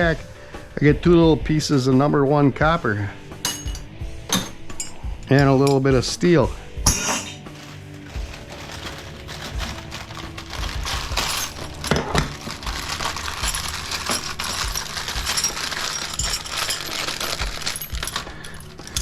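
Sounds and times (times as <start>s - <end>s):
scrap metal pieces clinking: 3.4s - 5.0s, 6.9s - 19.0s.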